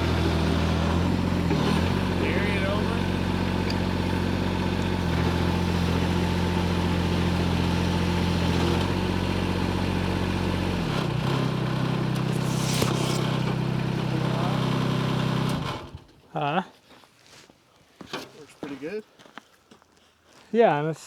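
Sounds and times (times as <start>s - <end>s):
excavator engine running: 0.0s - 16.2s.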